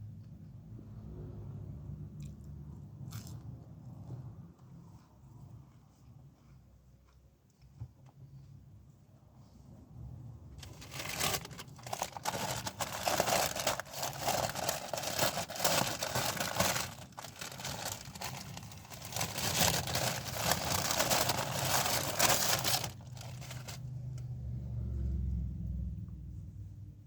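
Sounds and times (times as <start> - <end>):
crunching of crisp food being chewed: 2.2 - 8.6, 10.6 - 23.8.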